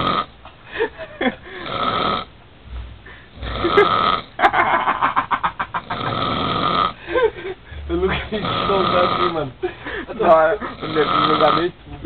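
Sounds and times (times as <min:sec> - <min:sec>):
man snoring heavily: 0:00.0 - 0:00.3, 0:01.6 - 0:02.3, 0:03.3 - 0:04.4, 0:05.8 - 0:07.0, 0:08.2 - 0:09.4, 0:10.7 - 0:11.7.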